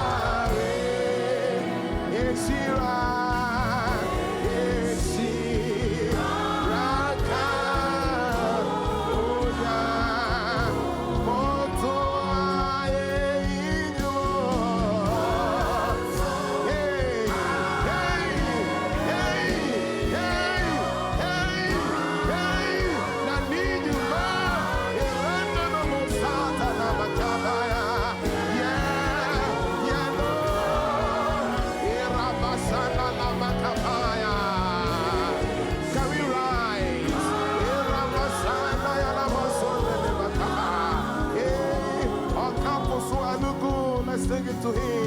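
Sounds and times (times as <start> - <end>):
instrumental accompaniment: 0.0 - 45.0
singing with vibrato: 0.0 - 45.0.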